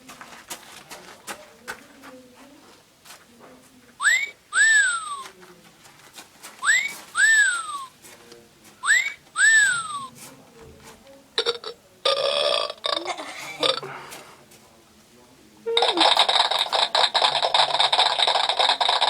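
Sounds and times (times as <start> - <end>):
person whistling sliding notes: 4.0 - 5.2, 6.6 - 7.9, 8.8 - 10.1.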